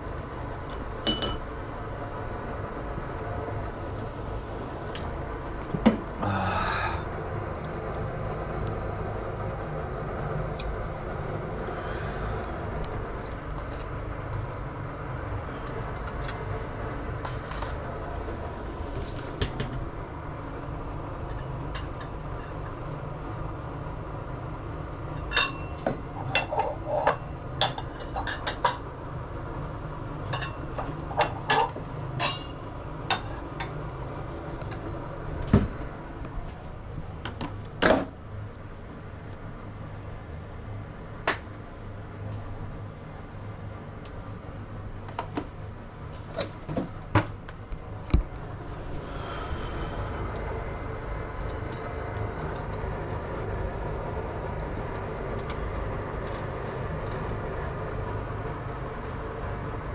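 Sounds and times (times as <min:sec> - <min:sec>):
steady low hum: 0:00.0 - 0:59.9
dishes and utensils clinking: 0:00.7 - 0:01.5, 0:25.2 - 0:28.8, 0:30.3 - 0:33.3.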